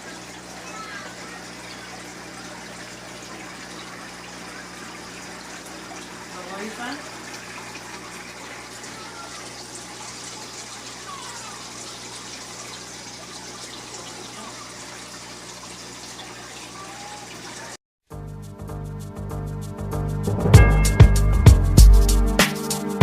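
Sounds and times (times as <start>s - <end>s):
running water rushing: 0.0s - 17.8s.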